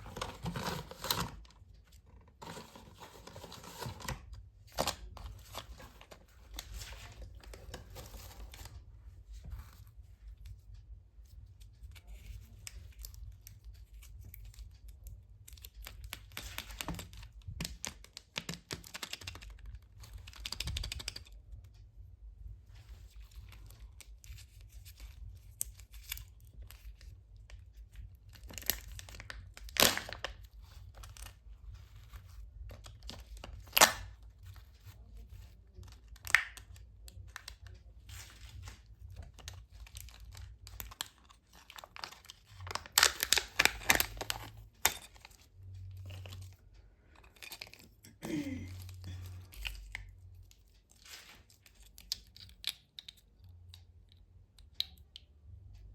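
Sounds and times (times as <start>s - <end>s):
foil and plastic wrapper crinkling: 28.2s - 45.4s.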